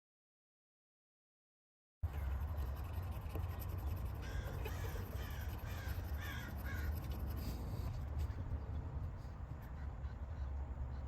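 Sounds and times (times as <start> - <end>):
steady low hum: 2.0 - 11.0
bird harsh calls: 3.4 - 7.5, 9.5 - 11.0.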